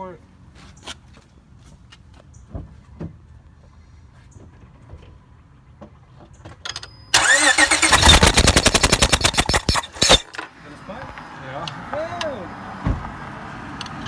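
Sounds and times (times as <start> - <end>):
car engine cranking by starter motor: 7.2 - 10.4.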